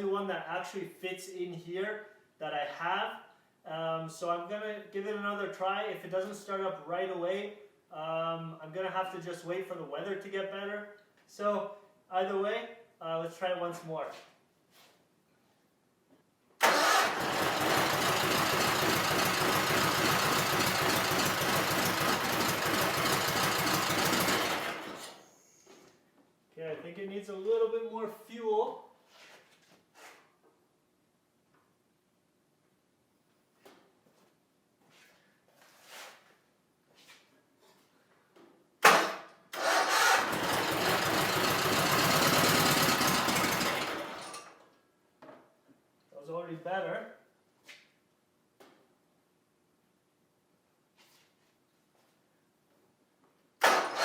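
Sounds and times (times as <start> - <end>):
tractor engine cranking and running: 16.6 - 25.2, 38.9 - 44.6, 53.6 - 54.0
short loud engine burst: 53.6 - 54.0.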